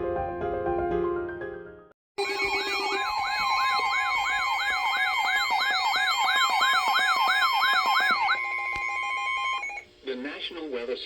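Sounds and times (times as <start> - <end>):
alarm yelp rising and falling: 2.2 - 9.8
steady high warning tone: 2.2 - 9.9.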